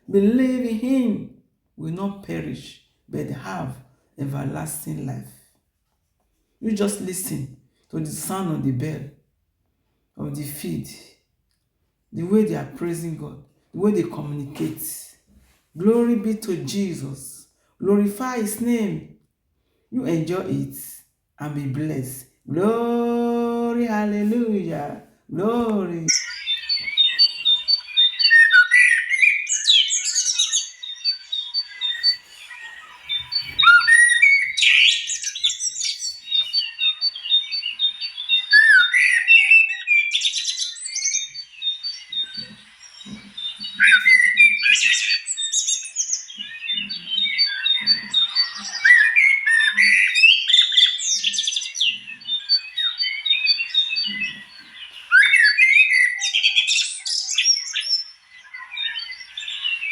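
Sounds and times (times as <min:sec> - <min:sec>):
birds chirping and calling: 0:12.2 - 0:15.0, 0:20.0 - 0:59.9.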